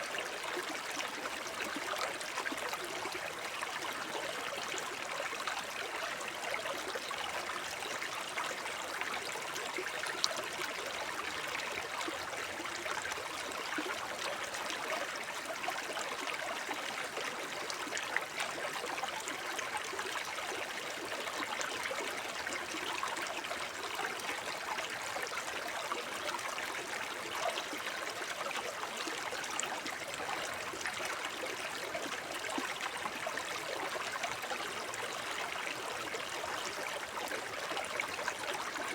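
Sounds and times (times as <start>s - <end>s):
stream babbling over stones: 0.0s - 38.9s.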